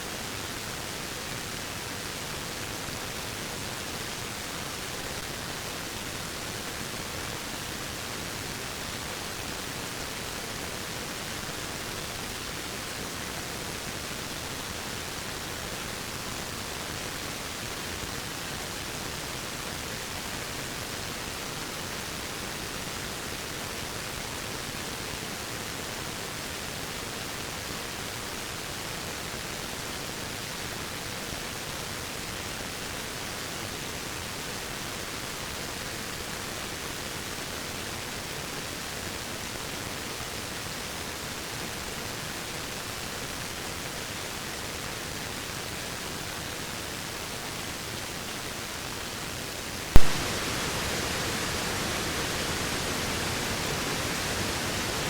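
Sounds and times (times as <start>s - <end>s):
waterfall rushing: 49.9s - 55.0s.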